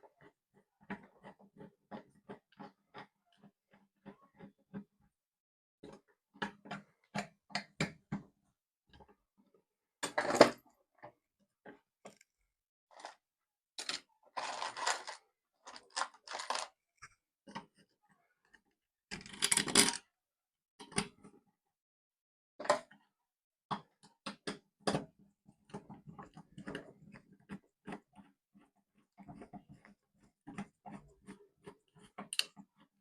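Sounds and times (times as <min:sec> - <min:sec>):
small hard objects clicking: 0:13.8 - 0:16.7.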